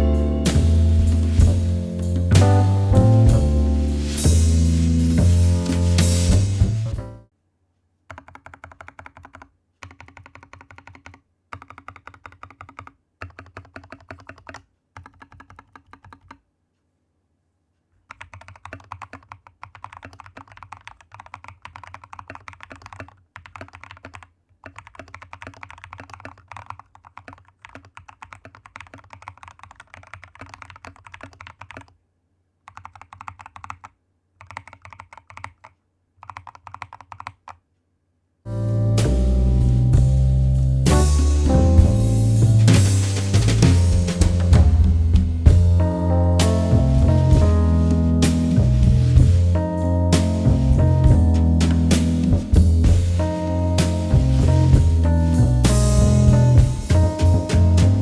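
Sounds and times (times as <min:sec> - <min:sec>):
mechanical keyboard typing: 0:08.1 - 0:16.4, 0:18.1 - 0:32.0, 0:32.7 - 0:37.6.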